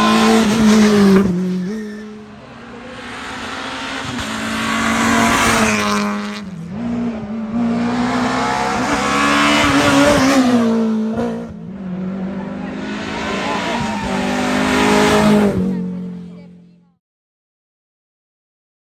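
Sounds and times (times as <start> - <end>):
rally car engine revving through gears: 0.0 - 16.6.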